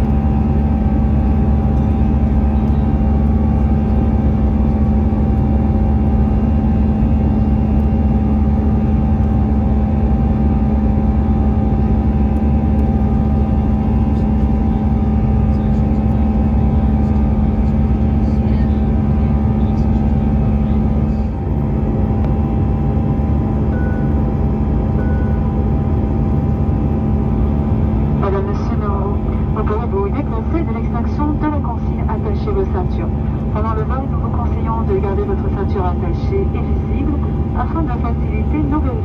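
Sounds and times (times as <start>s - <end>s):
constant hum: 0.0s - 39.0s
jet engines and airflow: 0.0s - 39.0s.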